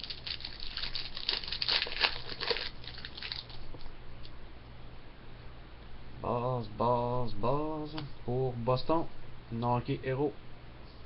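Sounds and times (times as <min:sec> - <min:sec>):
wrapper crinkling and tearing: 0:00.0 - 0:03.8.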